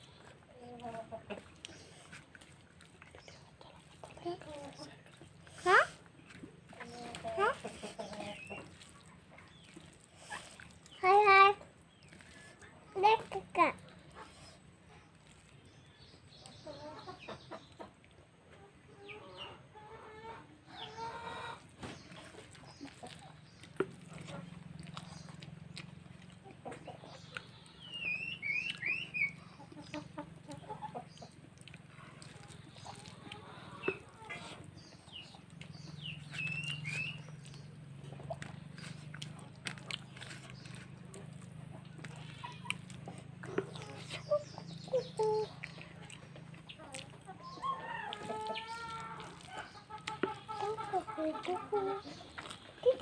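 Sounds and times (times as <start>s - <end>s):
person chewing food: 0.0s - 16.5s, 21.2s - 53.0s
chickens clucking: 0.0s - 53.0s
bird chirping calls: 26.8s - 39.2s, 40.0s - 53.0s.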